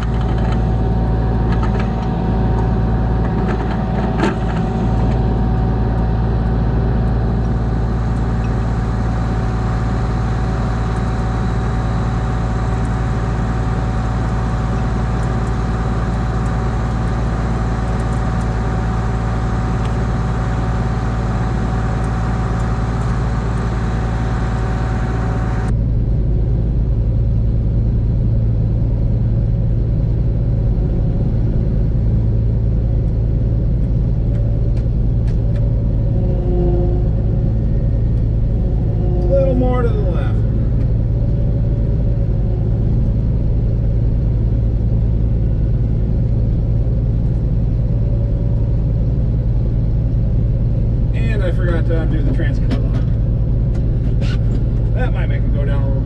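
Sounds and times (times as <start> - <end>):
farm machine engine running: 0.0 - 26.0, 27.7 - 56.0
high whine: 0.0 - 56.0.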